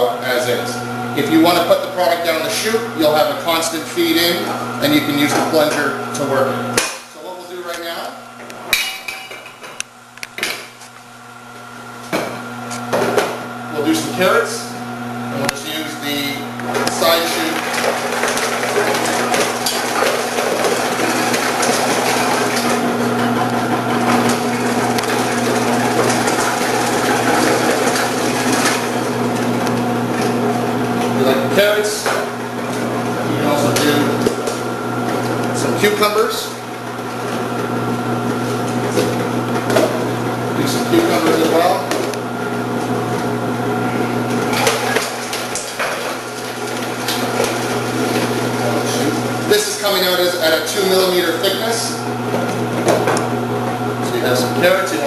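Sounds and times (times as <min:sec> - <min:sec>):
motor humming: 0:11.4 - 0:55.0
vegetable slicer motor hum: 0:17.6 - 0:31.6.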